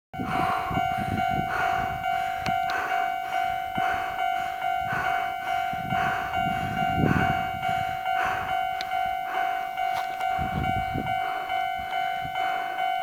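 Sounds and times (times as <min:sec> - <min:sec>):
level crossing alarm clanging: 0:00.2 - 0:13.0.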